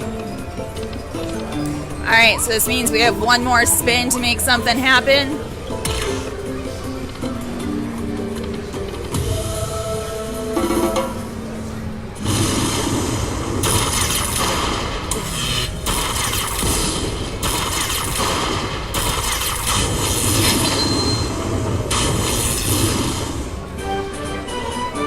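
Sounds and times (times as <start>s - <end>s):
slot machine crackling and rattling: 12.4s - 23.5s.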